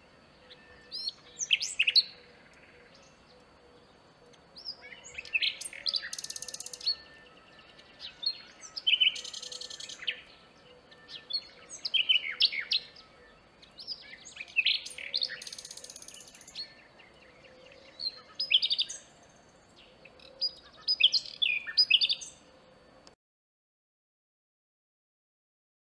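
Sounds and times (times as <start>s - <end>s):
nightingale singing: 0.0s - 23.2s.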